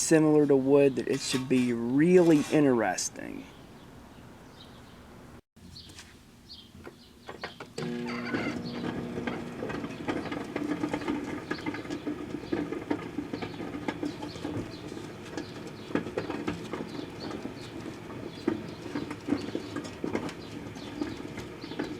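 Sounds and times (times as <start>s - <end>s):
clicks and crackles: 6.8s - 21.9s
microwave oven hum: 7.8s - 21.9s.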